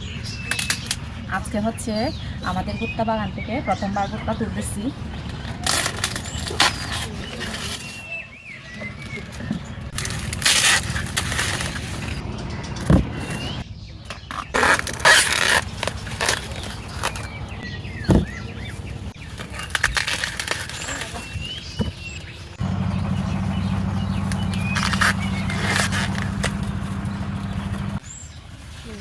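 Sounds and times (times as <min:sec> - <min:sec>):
small birds chirping: 0:00.0 - 0:29.0
corn plants rustling and snapping: 0:00.4 - 0:01.1, 0:05.3 - 0:08.2, 0:08.8 - 0:12.2, 0:14.1 - 0:17.4, 0:18.1 - 0:22.4, 0:24.0 - 0:29.0
low mechanical hum: 0:15.0 - 0:28.2.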